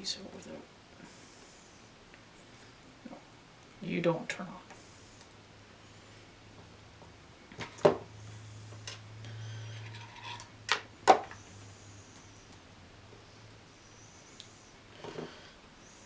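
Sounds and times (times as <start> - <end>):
low hum: 4.6 - 16.0.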